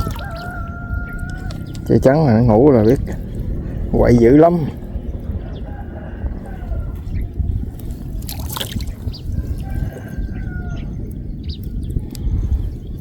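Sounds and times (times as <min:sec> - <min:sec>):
short water splashes: 0:00.0 - 0:04.0, 0:07.7 - 0:10.1.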